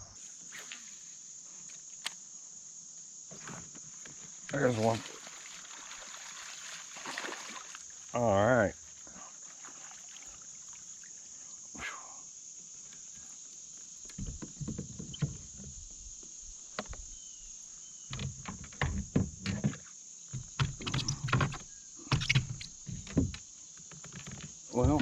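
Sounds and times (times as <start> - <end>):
insects droning: 0.0 - 25.0
knocks and clatter on kayak: 14.1 - 16.1, 18.1 - 25.0.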